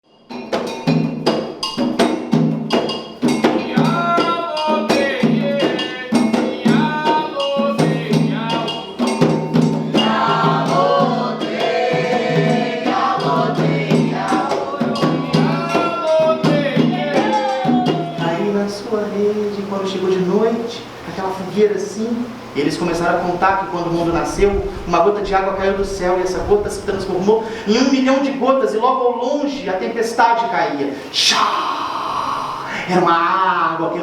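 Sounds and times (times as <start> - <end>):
percussion strokes: 0.0 - 21.0.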